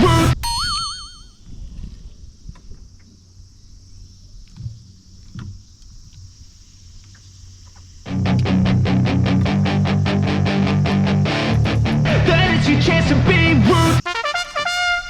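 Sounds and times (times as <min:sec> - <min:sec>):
guitar music: 0:00.0 - 0:00.4, 0:08.1 - 0:14.0.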